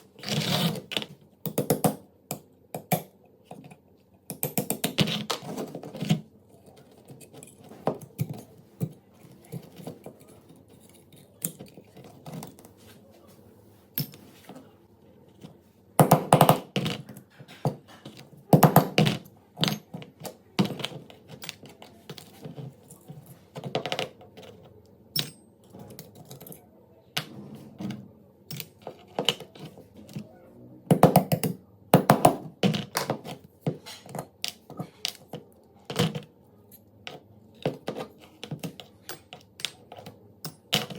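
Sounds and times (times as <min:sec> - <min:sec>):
metal parts clinking on hard surface: 0:18.6 - 0:26.6.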